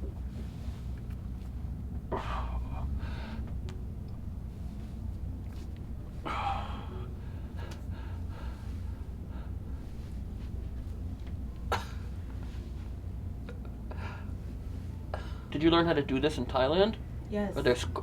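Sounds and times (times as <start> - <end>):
steady low hum: 0.0 - 18.0
man gasping breaths: 2.1 - 3.6, 6.2 - 10.0.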